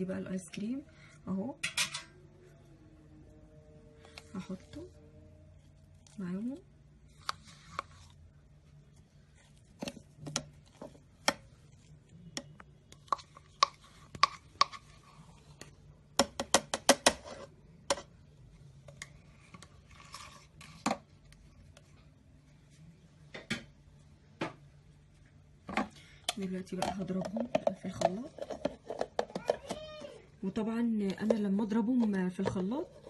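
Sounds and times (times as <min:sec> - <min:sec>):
utensil knocking on containers: 0:26.7 - 0:29.8.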